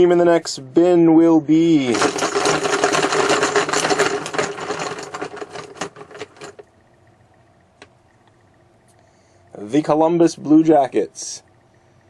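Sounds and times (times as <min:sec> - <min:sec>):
rapid clicking clatter: 0:01.9 - 0:06.7.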